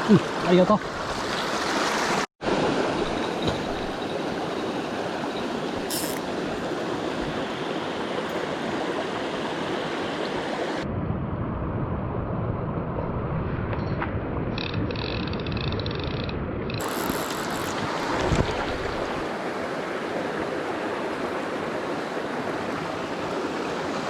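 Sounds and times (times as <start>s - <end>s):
stream water rushing: 0.0s - 10.9s, 16.7s - 24.0s.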